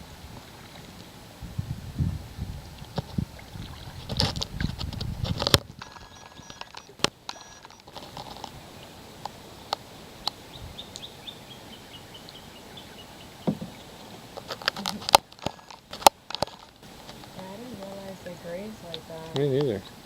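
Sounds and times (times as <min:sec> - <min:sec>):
low steady hiss: 0:00.0 - 0:20.0
bird chirping: 0:05.8 - 0:08.0, 0:09.6 - 0:14.2.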